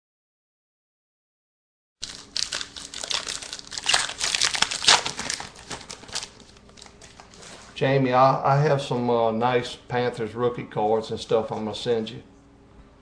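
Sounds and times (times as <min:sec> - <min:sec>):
foil wrapper crinkling: 0:02.0 - 0:07.8.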